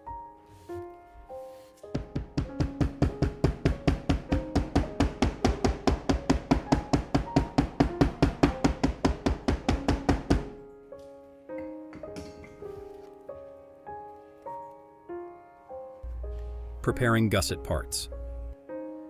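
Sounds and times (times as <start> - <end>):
soft piano notes: 10.5 - 19.0.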